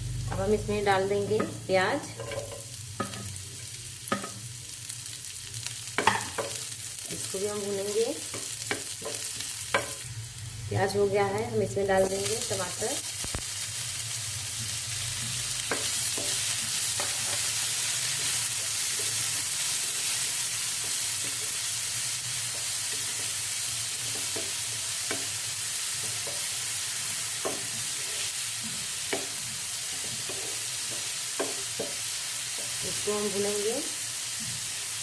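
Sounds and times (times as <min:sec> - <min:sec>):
vegetables sizzling in oil: 0:00.0 - 0:35.0
spatula scraping a pan: 0:02.1 - 0:03.2.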